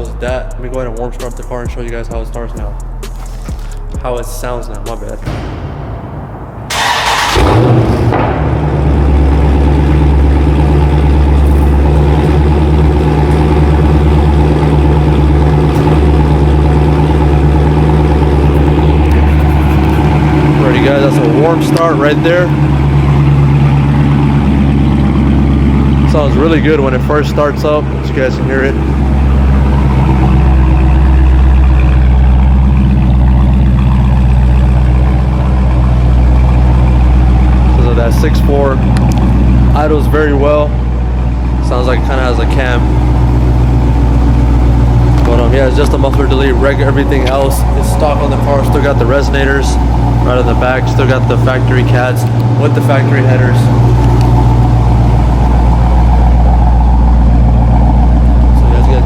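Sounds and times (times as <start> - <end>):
loud engine idling: 0.0 - 59.0.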